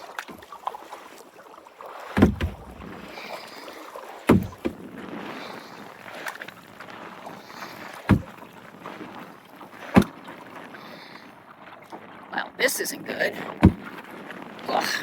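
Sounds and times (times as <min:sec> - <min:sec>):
water washing along kayak hull: 0:00.0 - 0:15.0
deep paddle knocks: 0:02.2 - 0:03.2, 0:04.3 - 0:05.0, 0:08.0 - 0:08.5, 0:09.9 - 0:10.2, 0:13.5 - 0:14.0.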